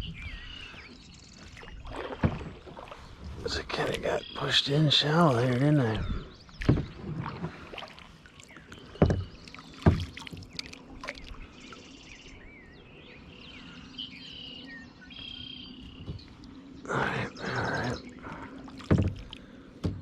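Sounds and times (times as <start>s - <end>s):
birds chirping: 0.0s - 20.0s
paddle knocking kayak hull: 1.9s - 4.1s, 5.9s - 7.9s, 8.8s - 11.2s, 18.7s - 20.0s.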